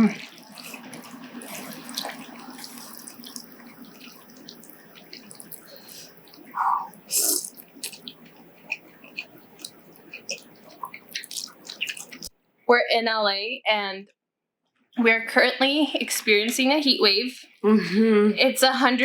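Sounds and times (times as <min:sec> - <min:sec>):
mouth clicks and smacks: 0:00.0 - 0:12.3
noodles being slurped and chewed: 0:00.0 - 0:12.3.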